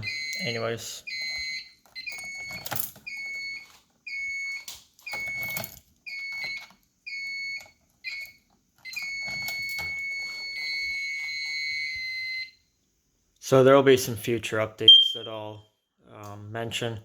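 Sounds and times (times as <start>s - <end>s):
fire alarm beeping: 0.0s - 12.6s, 14.9s - 15.6s.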